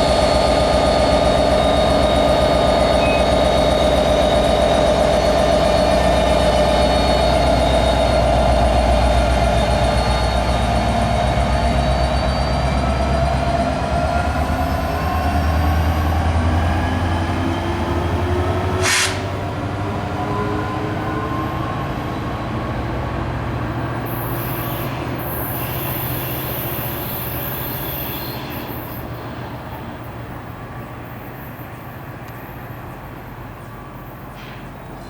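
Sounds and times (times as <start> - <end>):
train rumbling past: 0.0 - 35.0
short sharp hiss: 18.8 - 19.3.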